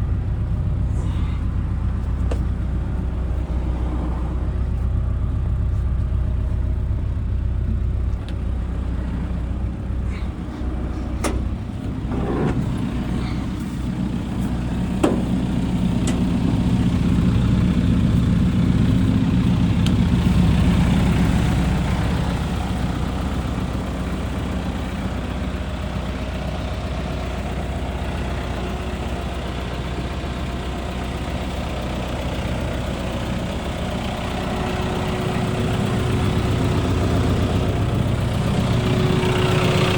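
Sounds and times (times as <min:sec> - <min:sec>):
excavator diesel engine running: 0:00.0 - 0:39.9
sharp clicks and knocks: 0:11.2 - 0:12.8, 0:15.0 - 0:16.7.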